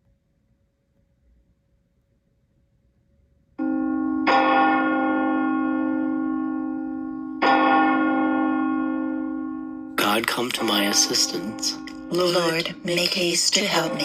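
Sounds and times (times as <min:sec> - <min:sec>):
bell ringing: 0:03.6 - 0:14.0.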